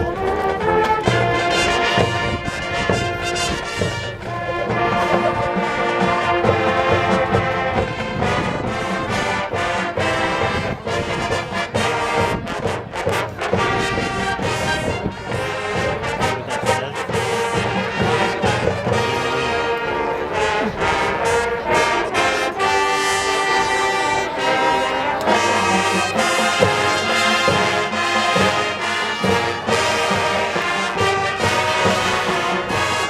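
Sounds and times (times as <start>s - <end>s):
brass playing sustained chords: 0.0s - 33.0s
drum strikes: 25.2s - 33.0s.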